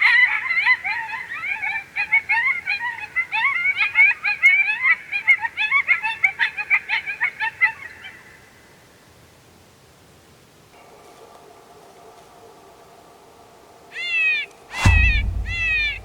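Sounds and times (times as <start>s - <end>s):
high warbling animal cries: 13.9s - 16.0s.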